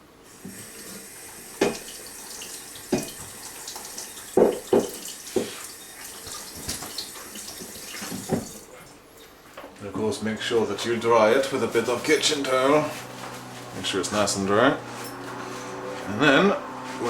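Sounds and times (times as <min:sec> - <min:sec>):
tap running into sink: 0:00.4 - 0:08.6.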